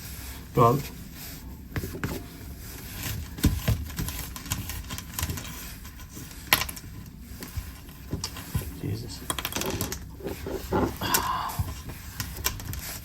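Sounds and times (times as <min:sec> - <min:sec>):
small parts clicking and tapping: 0:09.2 - 0:10.1.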